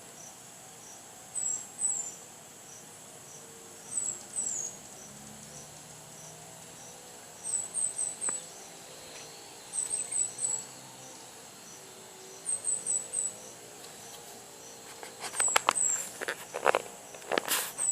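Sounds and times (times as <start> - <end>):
faint rural background: 0.0 - 17.9
sharp crackles and knocks: 13.8 - 17.9.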